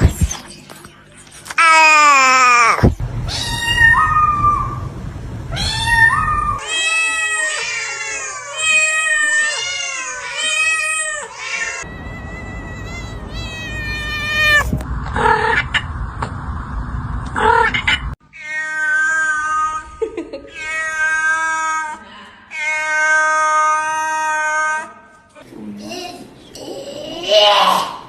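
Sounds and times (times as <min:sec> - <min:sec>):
cats meowing and yowling: 0:01.6 - 0:04.9, 0:05.5 - 0:14.8, 0:18.3 - 0:25.0.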